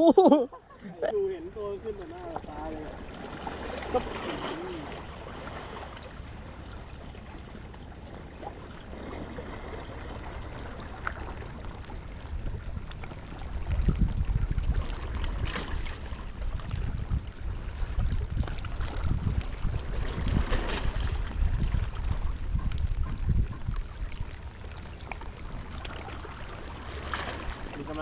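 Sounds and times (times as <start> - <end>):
surf on seashore: 0.0 - 23.1, 25.6 - 28.0
wind: 0.0 - 28.0
wind buffeting microphone: 9.0 - 26.1.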